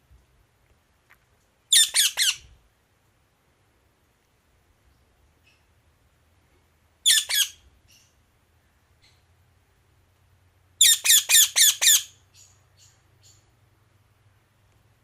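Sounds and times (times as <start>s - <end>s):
parrot squawking: 1.7s - 2.5s, 7.0s - 7.6s, 10.8s - 12.1s.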